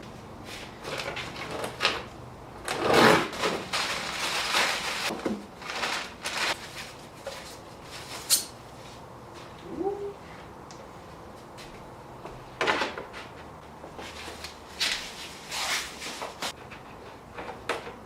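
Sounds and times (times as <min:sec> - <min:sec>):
cardboard and packing rustling: 0:00.5 - 0:08.3.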